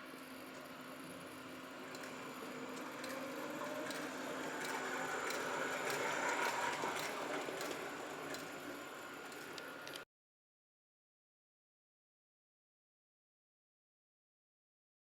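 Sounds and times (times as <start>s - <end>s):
model train motor whirring: 0.0s - 10.0s
wheels clicking on rails: 0.2s - 10.0s.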